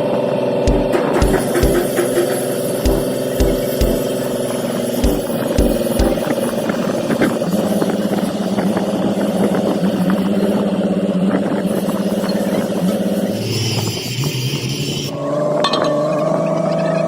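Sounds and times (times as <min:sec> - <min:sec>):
low thumps: 0:00.7 - 0:02.0.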